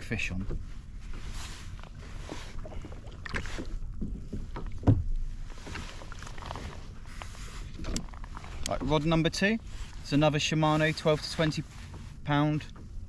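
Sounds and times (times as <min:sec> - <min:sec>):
gear clunking on kayak: 0:01.9 - 0:09.3.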